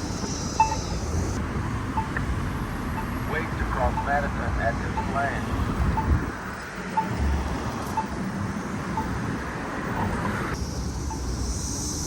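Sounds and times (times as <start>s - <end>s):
street traffic: 0.0s - 12.0s
pushbutton locator tone ticking: 0.2s - 1.4s, 2.0s - 5.2s, 5.8s - 6.2s, 7.0s - 7.3s, 8.0s - 8.2s, 9.0s - 9.2s, 10.0s - 10.2s.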